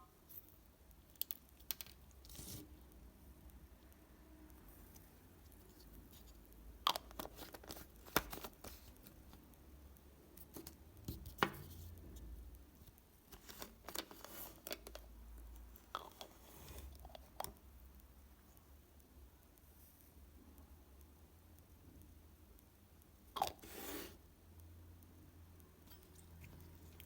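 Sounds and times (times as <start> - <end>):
objects being handled: 5.5 - 9.5, 12.9 - 15.2.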